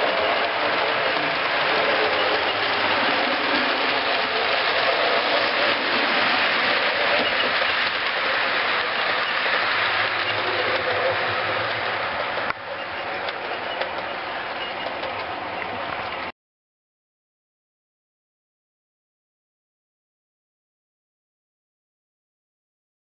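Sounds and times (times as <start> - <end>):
model train wheels on rail: 0.0 - 16.3.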